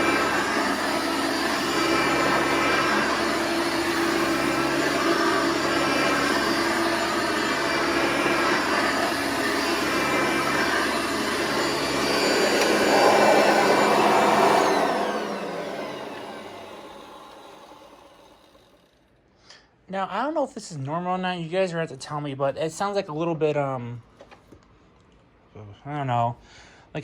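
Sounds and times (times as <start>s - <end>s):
upright vacuum running with whine: 0.0s - 19.0s
vacuum motor winding down: 0.0s - 19.2s.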